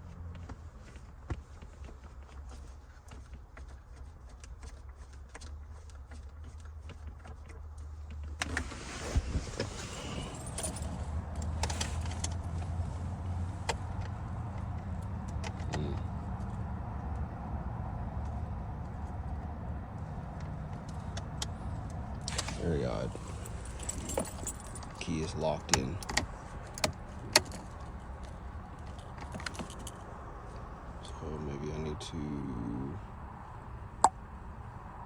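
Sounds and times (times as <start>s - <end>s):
low steady rumble: 7.8s - 35.0s
keys jangling and clicking: 9.8s - 12.6s, 21.8s - 30.1s.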